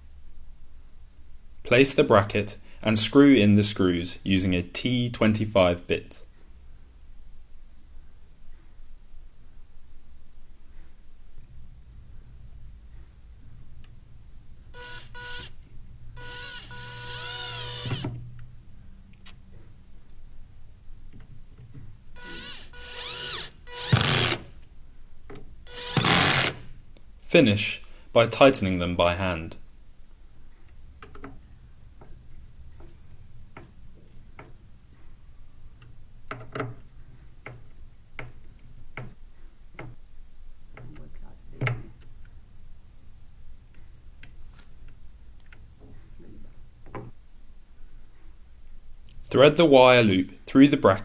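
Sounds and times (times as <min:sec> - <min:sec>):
power drill driving screws: 0:14.7 - 0:15.6, 0:16.2 - 0:18.2, 0:22.2 - 0:24.6, 0:25.7 - 0:26.8
screwdriver clicks and taps: 0:31.0 - 0:34.6, 0:35.8 - 0:39.2, 0:39.8 - 0:40.0.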